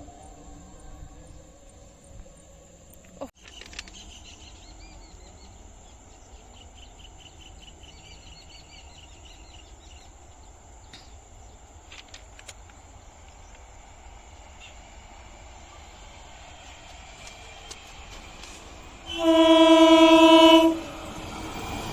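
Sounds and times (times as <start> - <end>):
bird chirping: 0.2 - 11.7.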